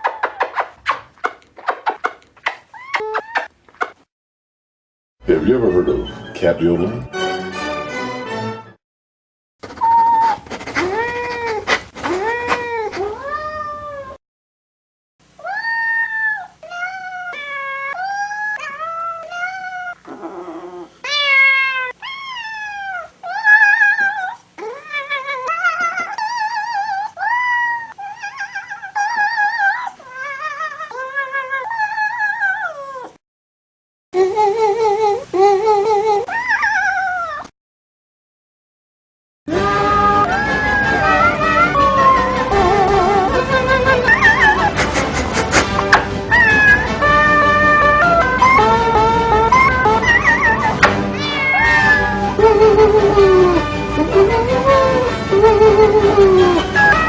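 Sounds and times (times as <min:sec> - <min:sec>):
cat meows in yodeling tune: 0:09.8 - 0:14.2, 0:15.4 - 0:20.0, 0:21.1 - 0:33.2, 0:34.2 - 0:37.5, 0:39.5 - 0:44.8, 0:46.3 - 0:57.0.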